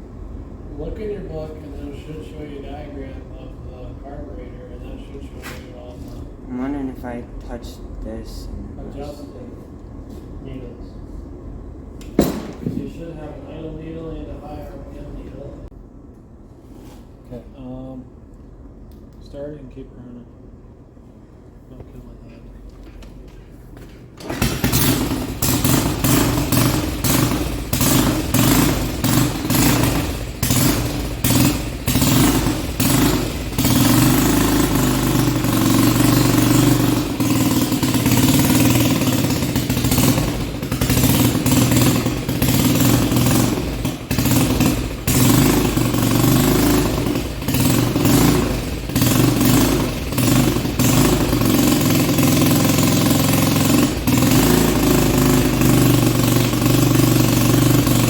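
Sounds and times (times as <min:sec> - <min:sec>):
quad bike engine stuttering: 0:24.2 - 0:58.0.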